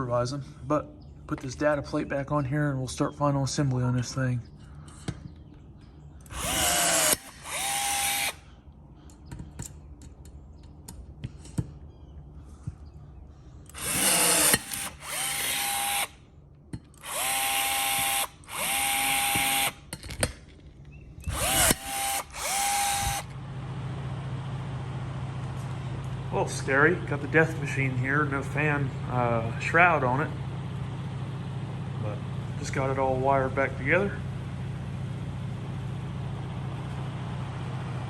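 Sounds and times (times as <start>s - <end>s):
power drill whine: 6.3s - 8.4s, 13.7s - 16.2s, 17.0s - 19.8s, 21.3s - 23.4s.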